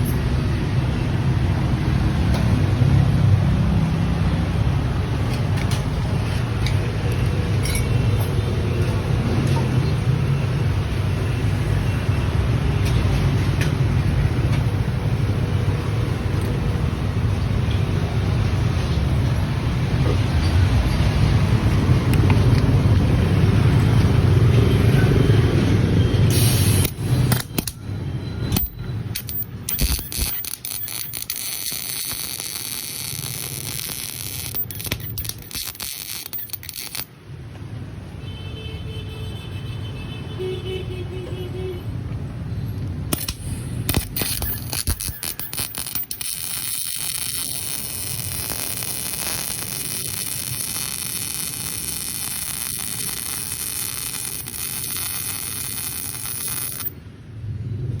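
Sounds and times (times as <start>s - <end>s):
welding arc crackling hiss: 26.3s - 27.7s, 28.6s - 37.1s, 43.2s - 57.0s.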